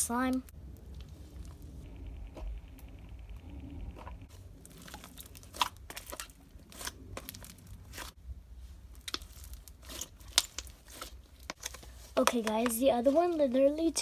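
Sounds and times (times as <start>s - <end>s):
hands squishing slime: 4.0s - 8.2s, 8.9s - 13.6s.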